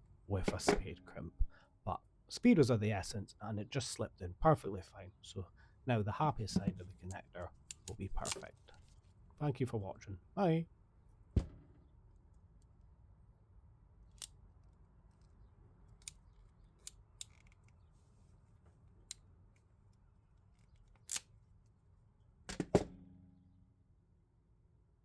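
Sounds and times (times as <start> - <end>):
hand tools clicking and knocking: 6.5 - 8.5.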